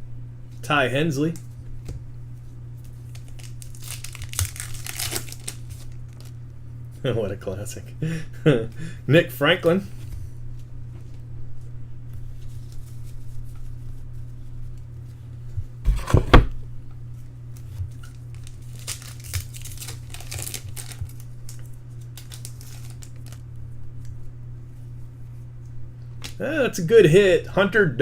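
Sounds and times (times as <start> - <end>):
steady low hum: 0.0 - 28.0
foil wrappers crinkling and tearing: 2.8 - 6.4, 12.2 - 14.3, 17.5 - 23.5
thumps: 15.9 - 16.6.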